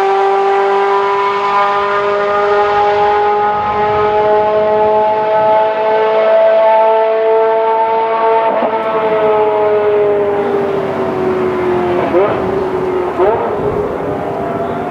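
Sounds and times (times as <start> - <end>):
racing engine revving: 8.5 - 14.9.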